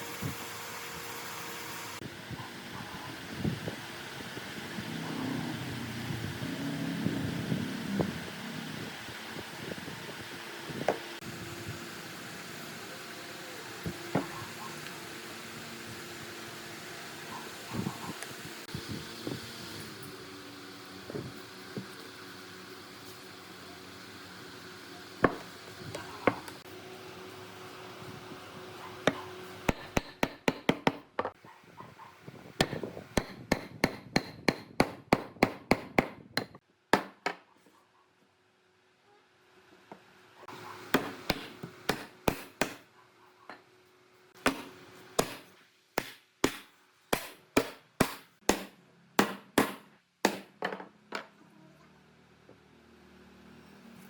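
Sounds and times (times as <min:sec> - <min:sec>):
hammer blows on wood: 0:32.6 - 0:37.1.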